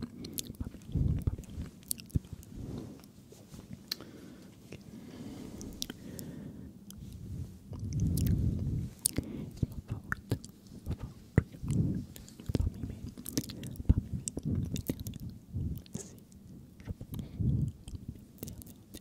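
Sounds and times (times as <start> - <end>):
wet mouth clicks and smacks: 0.0 - 2.5, 3.7 - 4.0, 7.7 - 16.2, 16.8 - 19.0
soft low swells: 0.4 - 18.2.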